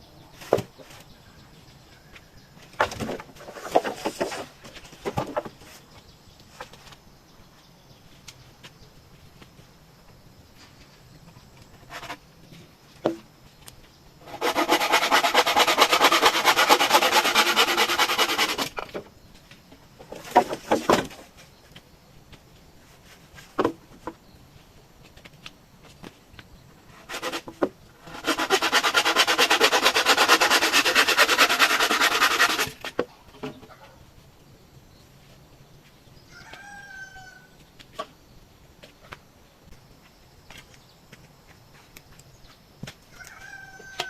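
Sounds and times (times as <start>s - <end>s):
hand tool rasping on bamboo: 14.2s - 18.9s, 26.9s - 33.0s.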